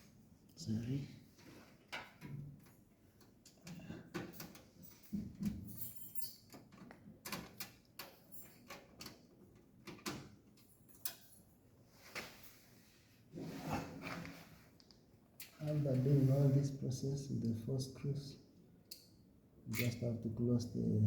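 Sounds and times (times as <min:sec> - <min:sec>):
screwdriver and screws on metal casing: 0:01.7 - 0:05.6, 0:06.2 - 0:11.4, 0:19.7 - 0:20.0.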